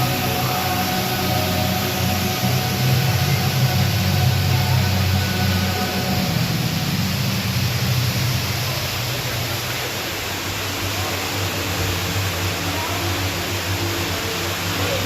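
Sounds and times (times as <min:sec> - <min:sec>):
low steady hum: 0:00.0 - 0:15.0
waterfall rushing in a cave: 0:00.0 - 0:15.0.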